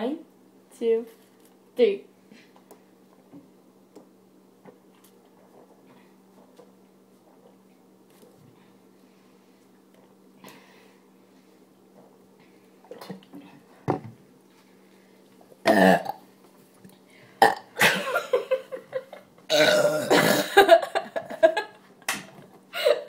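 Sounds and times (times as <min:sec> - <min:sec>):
people burping: 0:15.6 - 0:16.2, 0:17.4 - 0:18.0, 0:19.5 - 0:20.8.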